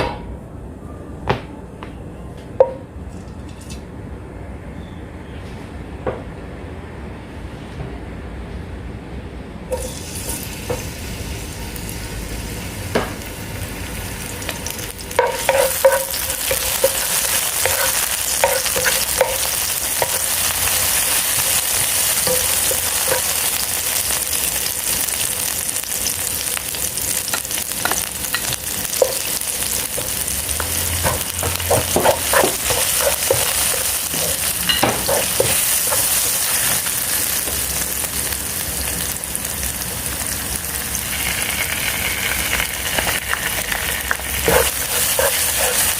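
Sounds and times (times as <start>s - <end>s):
food sizzling in a pan: 9.7s - 45.9s
spatula scraping a pan: 15.2s - 23.6s, 31.0s - 36.8s, 44.3s - 45.9s.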